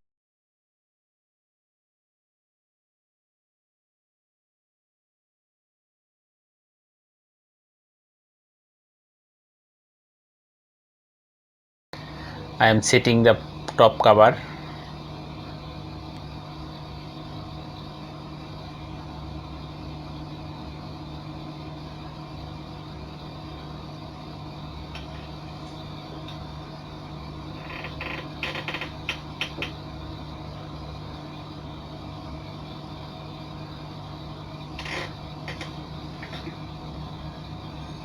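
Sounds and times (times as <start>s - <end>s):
steady low hum: 12.0s - 38.0s.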